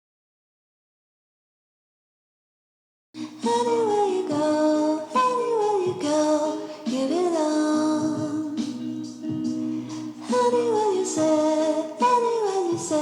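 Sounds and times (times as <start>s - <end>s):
song with singing voice: 3.2s - 13.0s.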